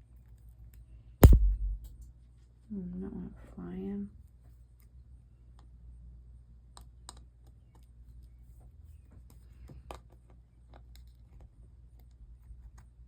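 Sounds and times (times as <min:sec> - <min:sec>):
steady low hum: 0:01.2 - 0:02.1.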